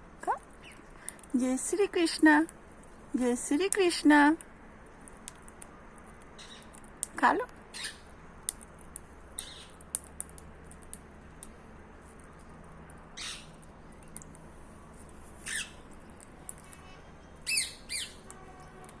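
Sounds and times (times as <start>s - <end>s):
parrot squawking: 7.7s - 8.0s, 13.2s - 13.5s, 15.4s - 15.8s, 17.4s - 18.2s.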